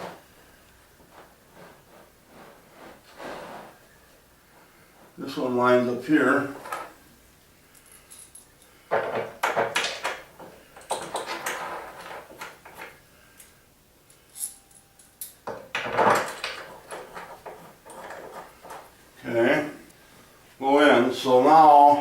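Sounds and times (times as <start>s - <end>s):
wooden parts knocking and rattling: 8.9s - 13.0s, 15.4s - 18.9s.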